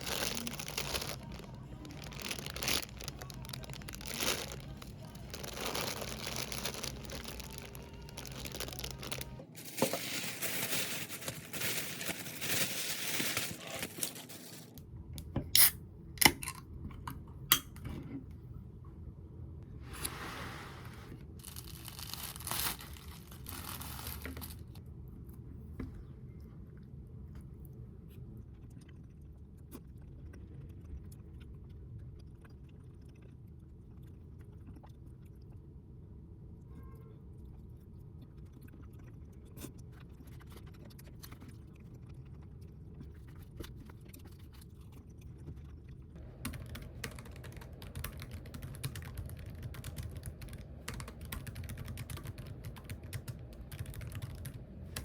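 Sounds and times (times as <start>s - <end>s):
low steady hum: 0.0s - 55.0s
rapid keyboard typing: 46.2s - 55.0s.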